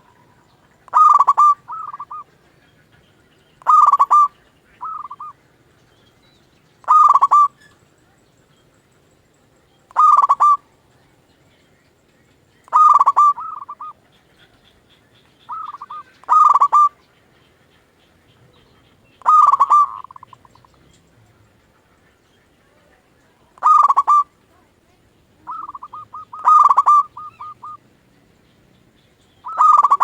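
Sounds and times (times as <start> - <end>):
dove cooing: 0.0 - 5.4, 6.8 - 7.8, 9.9 - 10.7, 12.7 - 14.8, 15.4 - 27.8, 29.4 - 30.0.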